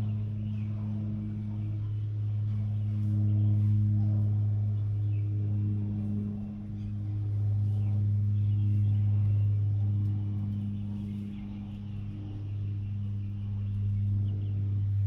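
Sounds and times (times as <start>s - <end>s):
low droning hum: 0.0s - 15.0s.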